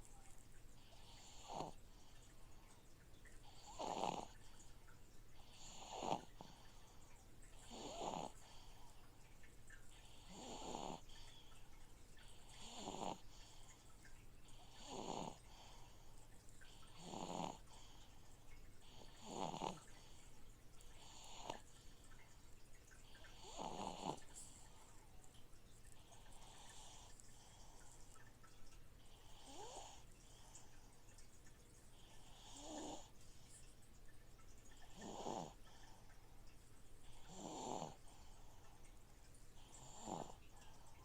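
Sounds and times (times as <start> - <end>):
fish tank filter hum: 0.0 - 3.4, 4.3 - 41.0
slow breathy snoring: 0.8 - 2.3, 3.4 - 4.7, 5.4 - 9.0, 10.0 - 11.6, 12.3 - 13.9, 14.5 - 18.2, 18.8 - 22.2, 23.0 - 24.9, 29.0 - 30.8, 31.9 - 33.1, 34.7 - 36.1, 37.0 - 38.9, 39.6 - 41.0.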